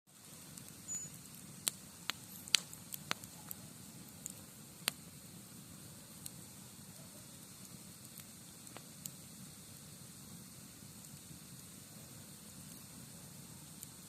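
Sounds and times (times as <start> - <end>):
campfire crackling and popping: 0.1 - 14.0.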